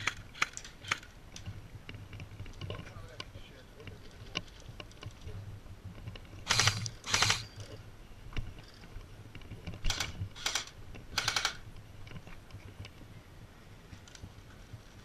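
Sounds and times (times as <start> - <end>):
airsoft gun rapid clicking bursts: 6.5 - 7.5, 9.9 - 11.6.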